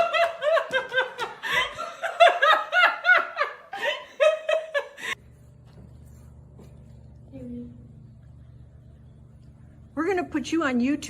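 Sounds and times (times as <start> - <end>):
faint low hum: 5.1 - 11.0.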